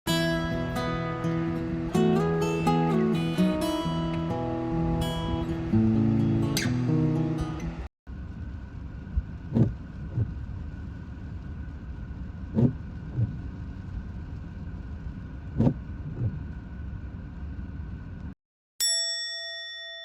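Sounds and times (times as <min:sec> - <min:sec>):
road rumble inside car: 0:07.2 - 0:18.4.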